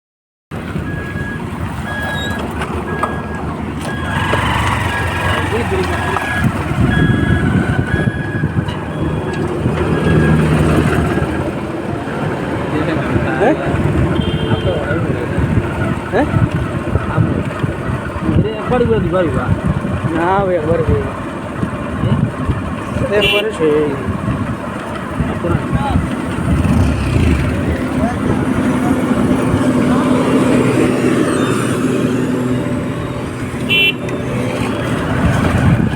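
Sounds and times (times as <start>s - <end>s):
construction machinery engine rumble: 0.6s - 35.9s
reversing alarm beeping: 0.8s - 11.4s.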